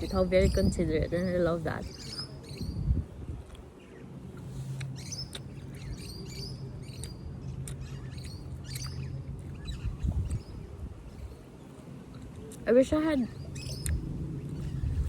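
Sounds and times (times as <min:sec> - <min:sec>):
low steady hum: 0:00.0 - 0:15.0
small songbirds chirping: 0:00.0 - 0:15.0.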